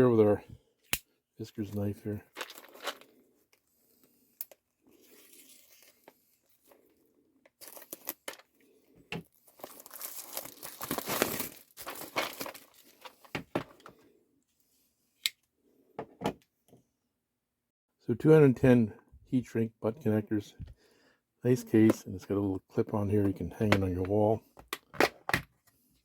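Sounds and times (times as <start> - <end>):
packaging crinkling and tearing: 2.3 - 3.2, 4.9 - 6.7, 7.6 - 8.5, 9.5 - 13.3.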